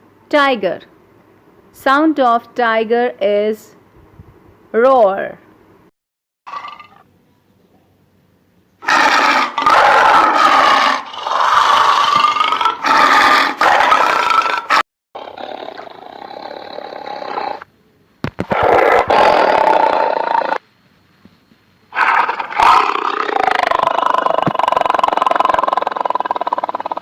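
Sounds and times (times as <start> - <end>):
tiger roaring: 8.8 - 17.6, 18.5 - 20.6, 21.9 - 27.0.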